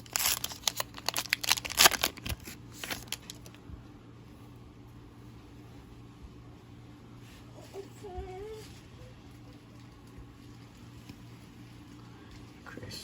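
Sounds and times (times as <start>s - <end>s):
wrapper tearing and crinkling: 0.0s - 3.6s
low steady hum: 0.0s - 13.0s.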